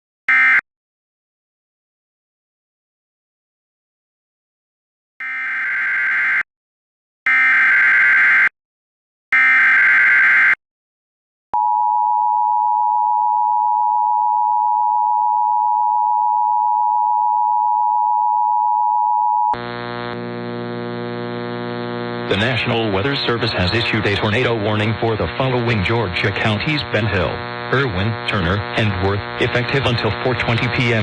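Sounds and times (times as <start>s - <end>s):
steady buzzy tone: 19.6s - 31.0s.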